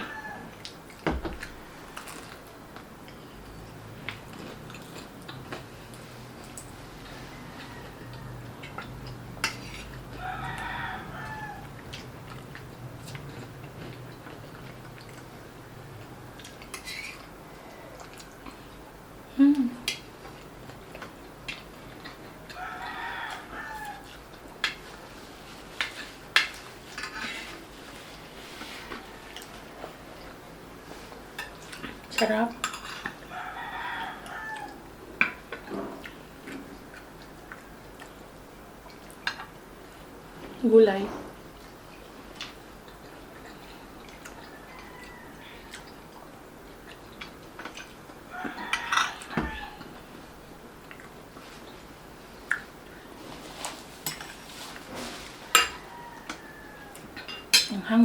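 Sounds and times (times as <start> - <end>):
dishes clattering: 9.4 - 10.0, 31.4 - 33.2, 55.5 - 56.4, 57.2 - 57.8
utensil clinking against dish: 55.5 - 55.9
utensils tapping on dishes: 55.5 - 56.4.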